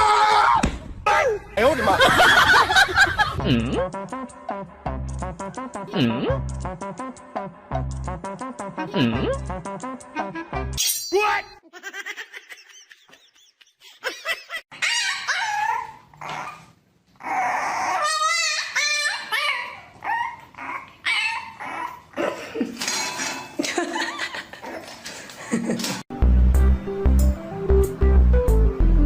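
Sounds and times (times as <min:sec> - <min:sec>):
dog whining and yipping: 0:14.7 - 0:22.1.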